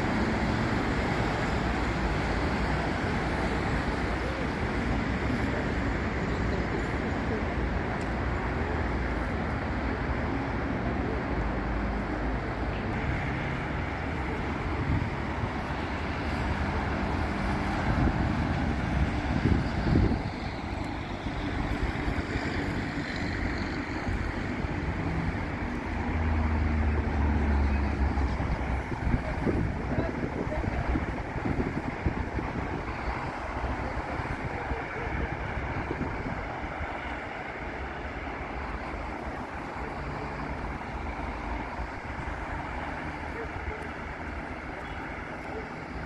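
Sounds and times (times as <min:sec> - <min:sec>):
cars passing: 0:00.0 - 0:46.0
heavy vehicle engine rumble: 0:00.0 - 0:46.0.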